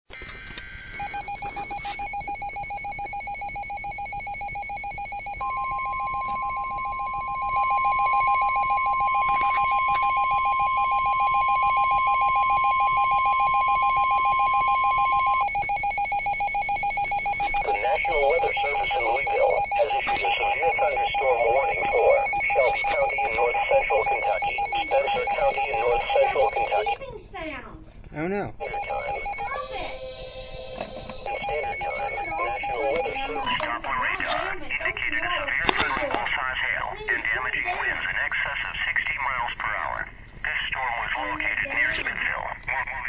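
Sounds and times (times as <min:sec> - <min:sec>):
data-like tones: 0:00.2 - 0:27.0, 0:28.6 - 0:34.8
long steady warning tone: 0:00.2 - 0:27.0, 0:28.6 - 0:33.8
rapidly pulsing beep alarm: 0:00.8 - 0:27.0, 0:28.6 - 0:33.7.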